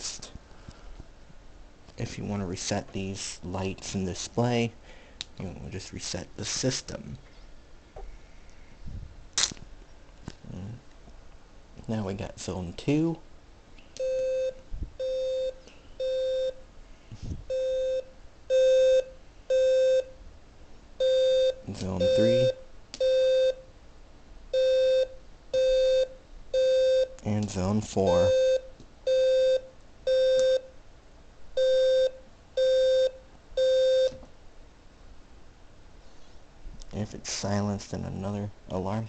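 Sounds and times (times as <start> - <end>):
fire alarm beeps: 14.0 - 16.6, 17.5 - 20.2, 21.0 - 23.7, 24.5 - 27.2, 28.1 - 30.7, 31.6 - 34.2.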